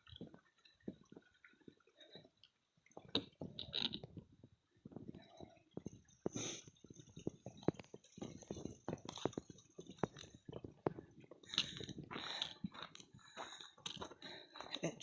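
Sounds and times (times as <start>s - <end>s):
footsteps on rocky trail: 7.1s - 15.0s.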